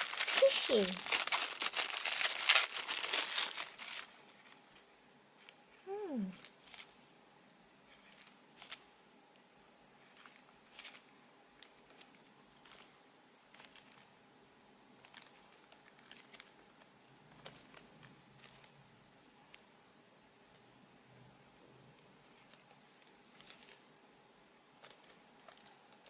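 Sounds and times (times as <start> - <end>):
plastic packaging crinkling: 0.0 - 4.7, 6.4 - 6.9, 8.0 - 8.8, 10.1 - 14.1, 15.0 - 18.8, 22.2 - 23.8, 24.8 - 26.0.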